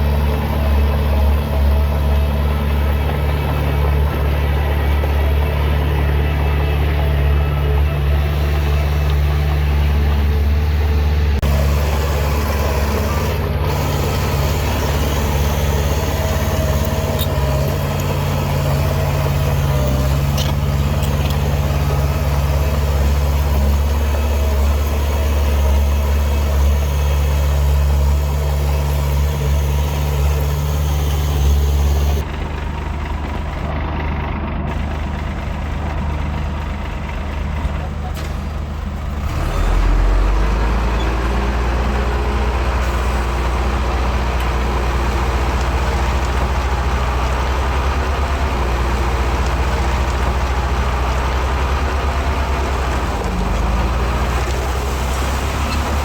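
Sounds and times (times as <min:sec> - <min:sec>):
heavy diesel engine running: 0:00.0 - 0:56.0.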